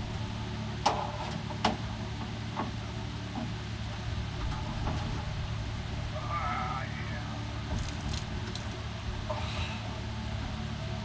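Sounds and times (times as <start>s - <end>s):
steady low hum: 0.0s - 11.0s
metal engine parts knocking: 7.7s - 8.8s.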